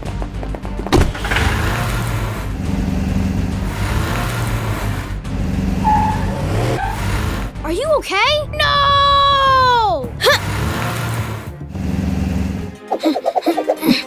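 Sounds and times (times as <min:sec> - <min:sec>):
toy vehicle engine hum: 0:00.9 - 0:07.6, 0:10.2 - 0:12.8.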